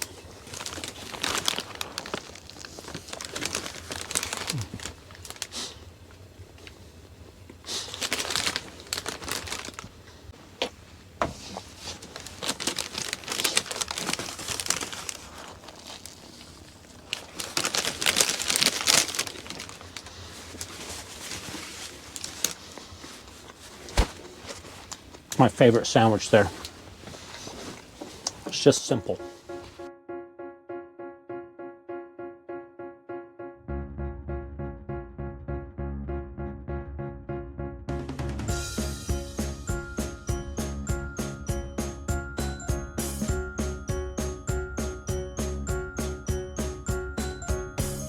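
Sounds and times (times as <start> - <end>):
paper wrapper crinkling: 0.0 - 5.8, 7.7 - 10.0, 11.5 - 29.8.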